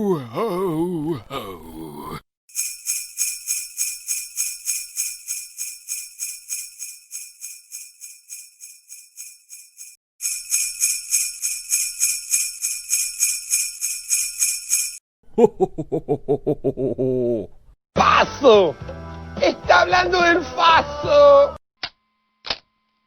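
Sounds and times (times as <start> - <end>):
sleigh bells jingling: 2.5 - 15.0.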